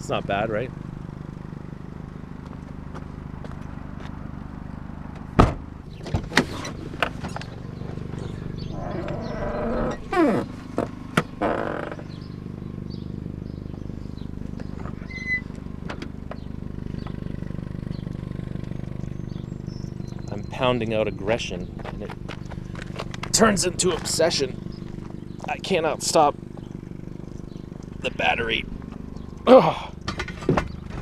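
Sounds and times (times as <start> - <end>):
junk scraping and rattling: 5.1 - 12.4, 13.0 - 31.0
short falling squeal: 8.6 - 10.5, 15.0 - 15.5
sharp knocks on junk: 30.1 - 31.0.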